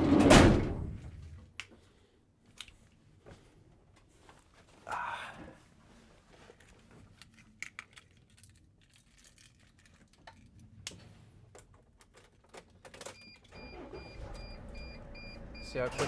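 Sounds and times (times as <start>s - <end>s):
keys clicking and rattling: 7.2s - 10.6s
dashboard warning chime beeping: 13.2s - 16.0s
van engine starting and idling: 13.5s - 16.0s.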